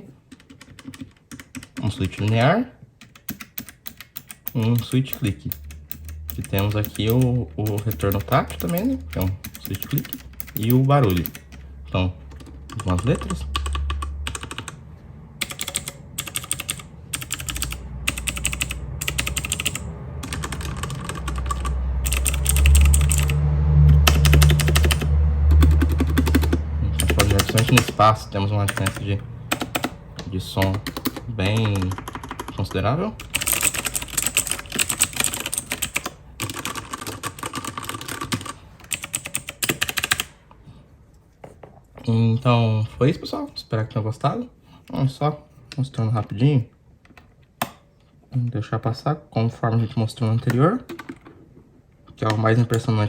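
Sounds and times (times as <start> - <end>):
mechanical keyboard typing: 0.3 - 11.6, 12.3 - 14.8, 15.4 - 30.0, 30.6 - 40.4, 50.9 - 51.3
low hum: 5.2 - 31.5.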